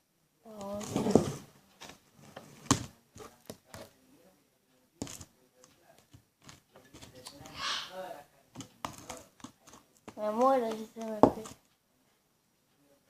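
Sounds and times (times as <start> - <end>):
soft handling noises: 0.5 - 7.5, 8.4 - 13.0
taps and knocks on plastic pot: 8.6 - 11.6.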